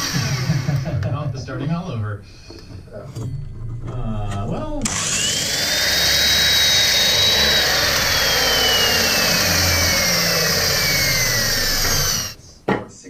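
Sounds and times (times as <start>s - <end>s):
power tool motor whine: 0.0s - 0.9s, 4.8s - 12.4s.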